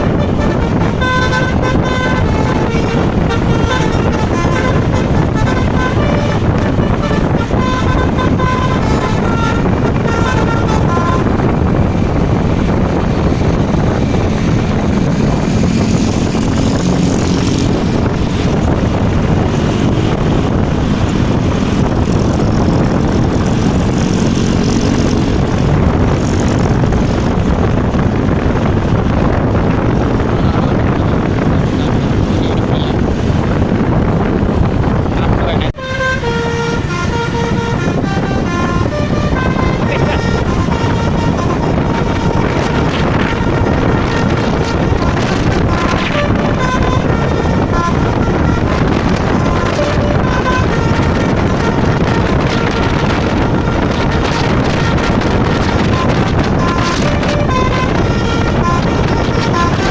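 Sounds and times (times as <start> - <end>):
bus horn playing a tune: 0.0 - 35.0, 35.7 - 59.9
bus engine passing: 0.0 - 59.9.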